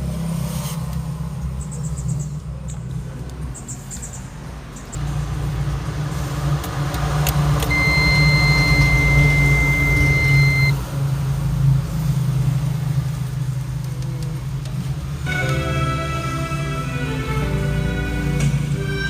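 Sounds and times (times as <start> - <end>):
high electronic beep: 7.7 - 10.8.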